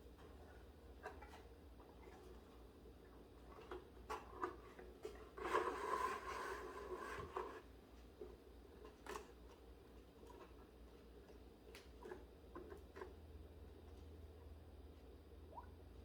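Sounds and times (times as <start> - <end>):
low steady hum: 6.7 - 16.0.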